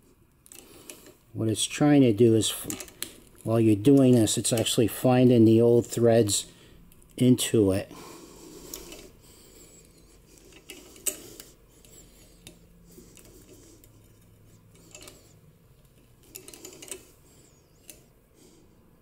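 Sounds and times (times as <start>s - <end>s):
faint metal scraping: 8.6s - 18.1s.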